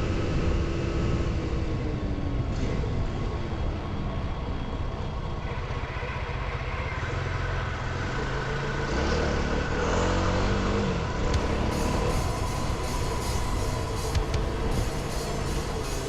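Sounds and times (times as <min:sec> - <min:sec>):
dirt bike engine accelerating: 0:07.1 - 0:16.0.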